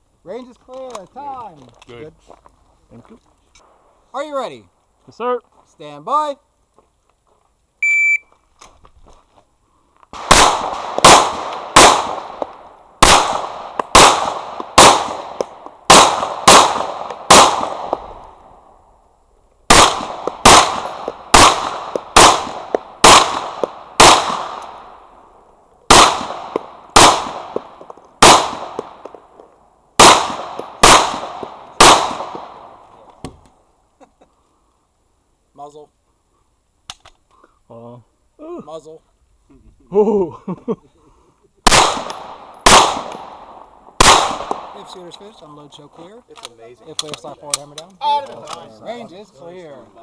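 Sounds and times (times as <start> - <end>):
electronic shot timer beep: 7.8 - 8.3
pistol shots: 10.1 - 18.6, 19.7 - 25.1, 25.9 - 29.4, 30.0 - 33.2, 41.6 - 45.1.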